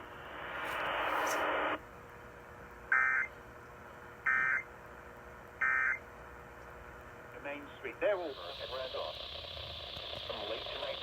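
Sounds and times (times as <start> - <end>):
radio hiss: 0.0 - 1.8, 7.4 - 11.0
warbling data tone bursts: 8.1 - 11.0.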